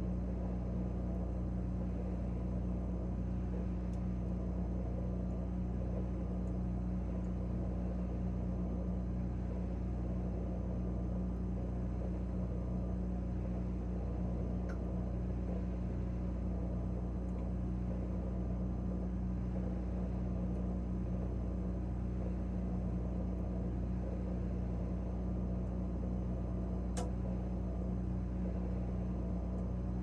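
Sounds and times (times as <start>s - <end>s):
refrigerator hum: 0.0s - 30.0s
short click: 26.9s - 27.2s.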